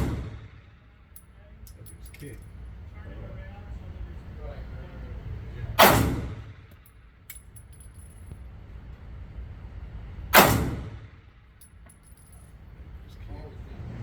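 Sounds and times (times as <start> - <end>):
pistol shots echoing: 0.0 - 0.6, 5.8 - 6.6, 10.4 - 11.2
brass casings clinking: 1.1 - 2.8, 6.7 - 8.4, 11.5 - 12.6.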